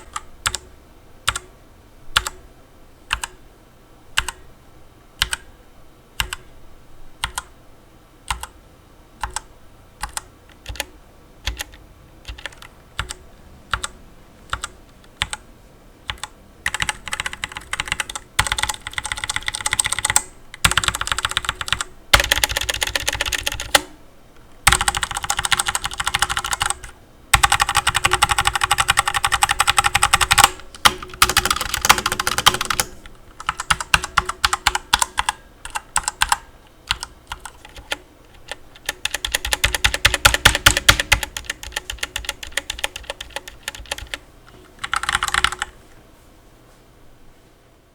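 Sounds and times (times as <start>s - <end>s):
mechanical keyboard typing: 0.0s - 0.7s, 1.3s - 1.5s, 2.2s - 2.4s, 3.1s - 3.4s, 4.2s - 4.4s, 5.2s - 5.5s, 6.2s - 6.5s, 7.2s - 7.5s, 8.3s - 8.6s, 9.2s - 15.4s, 16.1s - 24.0s, 24.6s - 45.8s.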